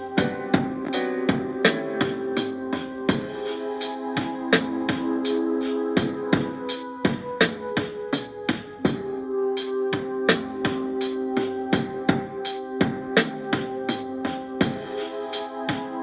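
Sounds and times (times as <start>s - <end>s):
drum beat: 0.0s - 5.4s, 6.0s - 9.1s, 10.0s - 15.0s
sustained keyboard chords: 0.0s - 16.0s.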